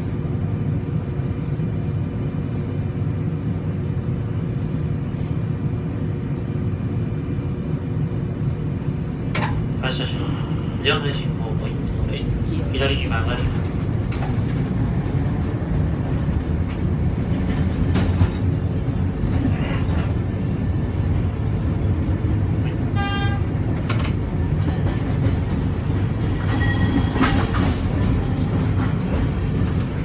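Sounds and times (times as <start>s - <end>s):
tram rumbling on rails: 0.0s - 30.0s
high-pitched squeal: 10.1s - 12.3s.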